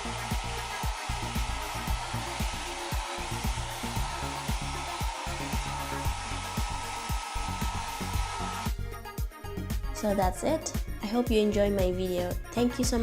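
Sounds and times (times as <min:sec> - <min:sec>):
hair dryer running: 0:00.0 - 0:08.8.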